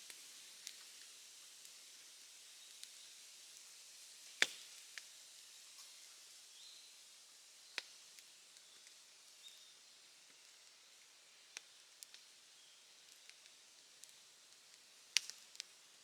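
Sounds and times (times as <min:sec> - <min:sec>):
faint steady hiss: 0:00.0 - 0:16.0
wood fire crackling and popping: 0:11.5 - 0:12.3, 0:13.0 - 0:16.0.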